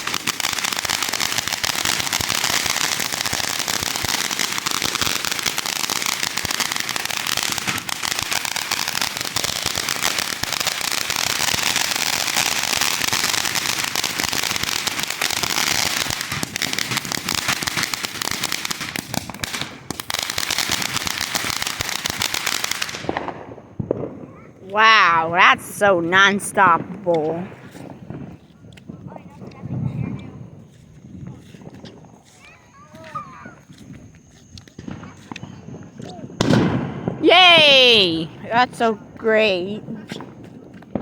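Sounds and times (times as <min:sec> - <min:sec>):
fireworks crackling: 0:00.0 - 0:41.0.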